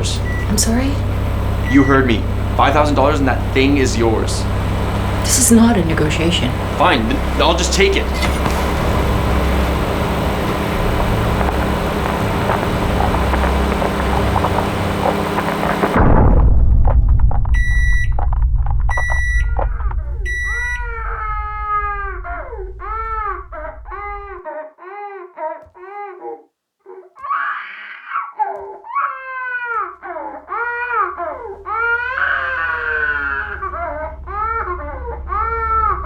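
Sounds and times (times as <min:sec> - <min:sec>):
microwave oven beeping: 0:00.0 - 0:24.3, 0:31.8 - 0:36.0
loud rumbling hum: 0:00.0 - 0:24.4, 0:30.7 - 0:36.0
newborn crying: 0:20.4 - 0:36.0.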